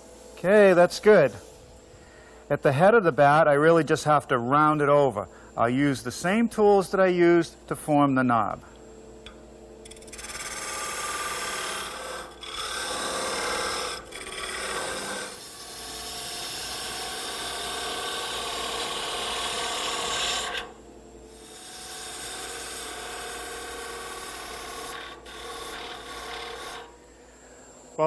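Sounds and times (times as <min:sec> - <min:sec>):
lathe gouge shaving wood: 0:09.9 - 0:20.8, 0:21.4 - 0:26.9.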